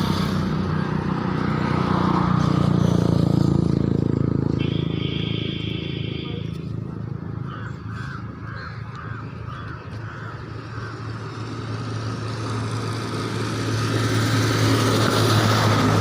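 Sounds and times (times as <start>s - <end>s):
vehicle engine passing by: 0.0s - 16.0s
crows cawing: 7.2s - 11.6s.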